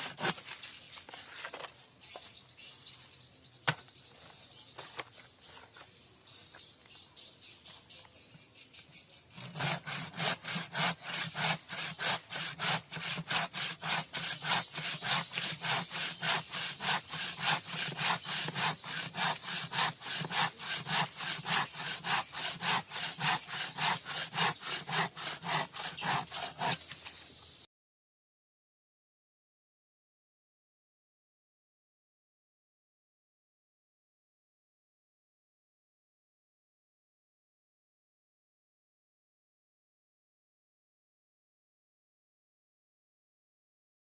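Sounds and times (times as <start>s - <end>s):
hand saw cutting wood: 0.0s - 0.7s, 9.3s - 27.2s.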